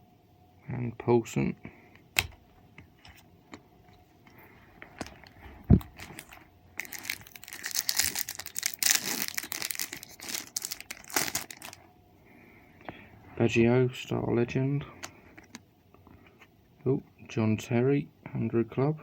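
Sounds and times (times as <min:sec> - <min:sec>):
wrapper tearing and crinkling: 0:05.2 - 0:11.8.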